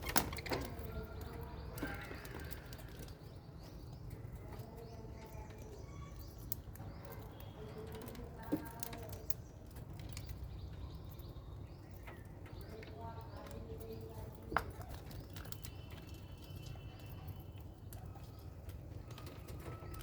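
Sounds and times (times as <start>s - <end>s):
birds chirping and chattering: 0.0s - 20.0s.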